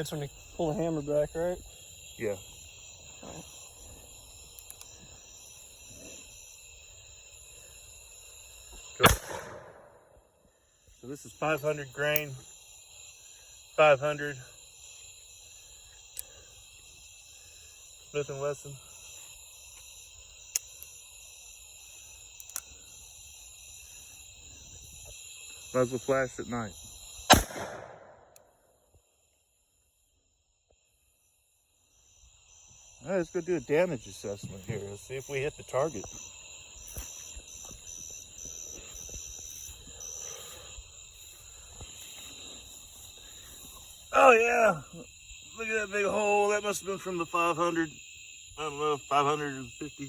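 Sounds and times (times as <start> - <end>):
crickets and night insects: 0.0 - 50.0
sharp clicks: 22.4 - 22.7.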